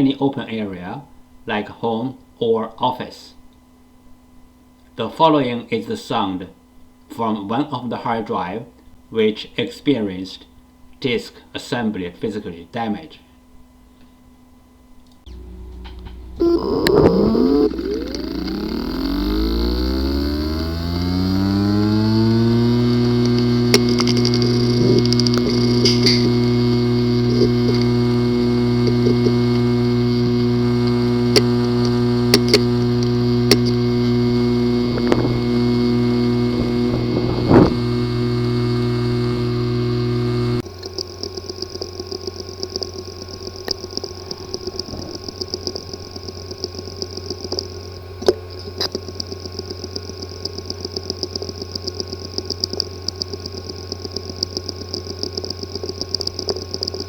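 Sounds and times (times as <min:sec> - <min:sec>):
hard drive clicks: 0:15.1 - 0:57.0
hard drive buzzing: 0:15.2 - 0:57.0
fast uneven ticking: 0:15.3 - 0:37.2, 0:37.8 - 0:57.0.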